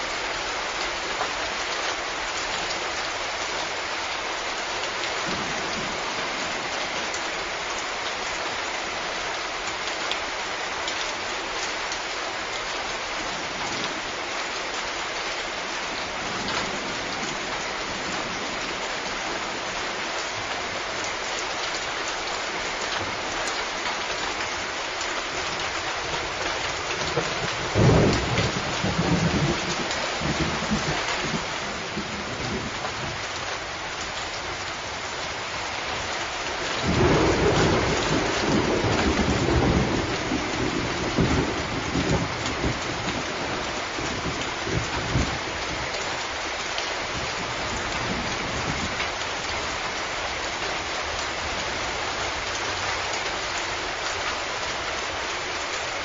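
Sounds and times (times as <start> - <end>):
heavy rain hissing: 0.0 - 56.0
thunder rumbling: 27.1 - 33.2, 36.8 - 45.7.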